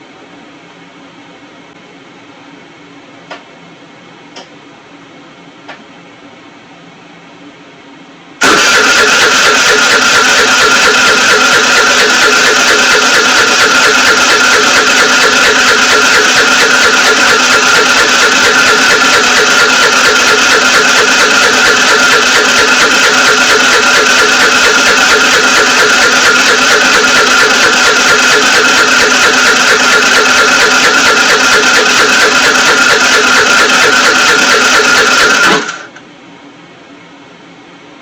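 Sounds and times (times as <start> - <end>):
scooter starter cranking engine: 8.4 - 35.9.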